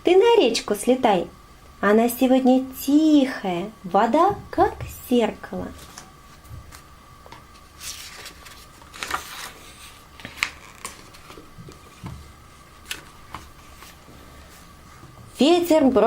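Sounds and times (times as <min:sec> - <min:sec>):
faint steady hum: 0:00.0 - 0:16.0
paper pages rustling: 0:07.5 - 0:14.7.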